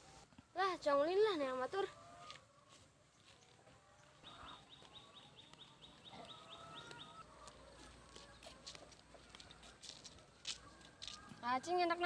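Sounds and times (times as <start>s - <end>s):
scattered bird calls: 3.1s - 9.4s.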